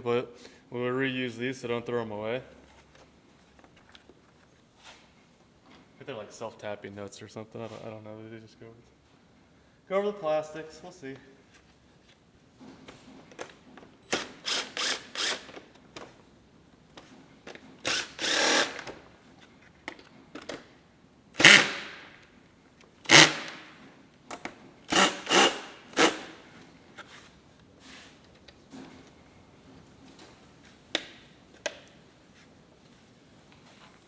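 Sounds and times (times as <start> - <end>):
power drill driving screws: 14.0 - 15.7, 17.8 - 19.0, 21.4 - 22.0, 23.1 - 23.7, 24.9 - 26.4.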